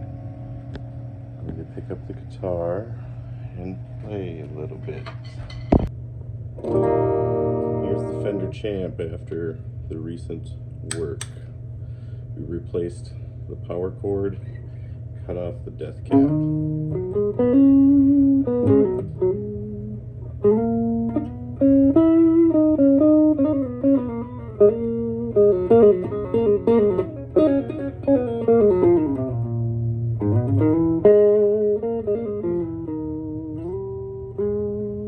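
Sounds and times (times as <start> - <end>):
amplifier low hum: 0.0 - 35.0
electric guitar notes and chords: 6.6 - 9.4, 16.0 - 35.0.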